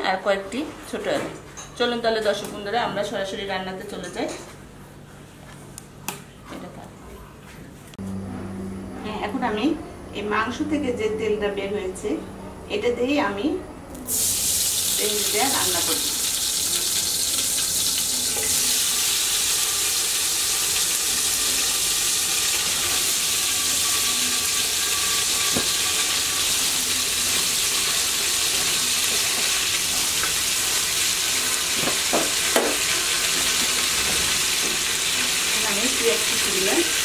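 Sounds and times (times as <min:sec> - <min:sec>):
hot oil sizzling in a pot: 0:14.1 - 0:37.0.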